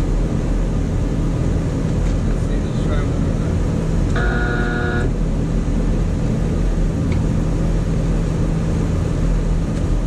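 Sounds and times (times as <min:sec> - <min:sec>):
air conditioning unit humming: 0:00.0 - 0:10.0
brief horn-like tone: 0:04.2 - 0:05.1.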